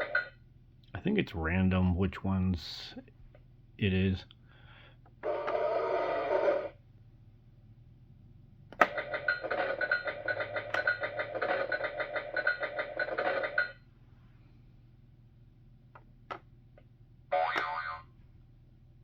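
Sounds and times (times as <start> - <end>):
tinny electronic toy sound effect: 17.3 - 18.1
toy button click: 17.4 - 18.0.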